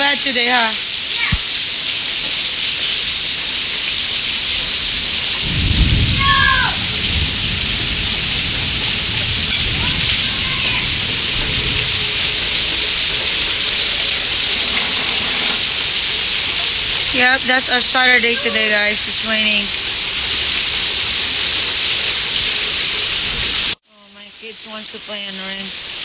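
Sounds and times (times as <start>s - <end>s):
heavy rain pouring: 0.0s - 26.0s
low rolling thunder: 3.2s - 23.8s.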